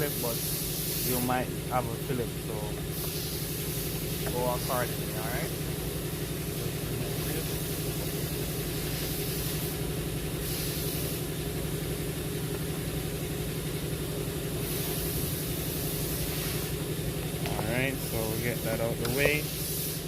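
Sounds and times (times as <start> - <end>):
high hiss: 0.0 - 1.5, 2.9 - 5.5, 7.2 - 9.8, 10.4 - 11.3
engine idling: 0.0 - 20.0.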